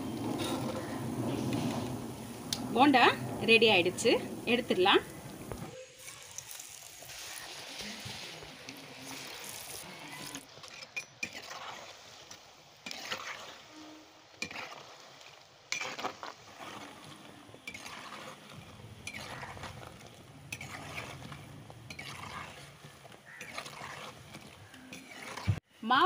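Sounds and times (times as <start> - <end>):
food sizzling in hot oil: 4.4 - 10.5, 17.6 - 19.9, 20.5 - 22.6
metal spoon scraping a pan: 6.0 - 12.0, 12.8 - 13.7, 14.4 - 25.6.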